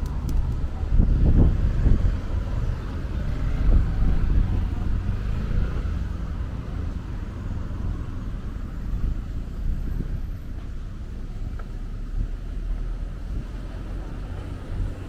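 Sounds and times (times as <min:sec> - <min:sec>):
wind buffeting microphone: 0:00.0 - 0:11.4.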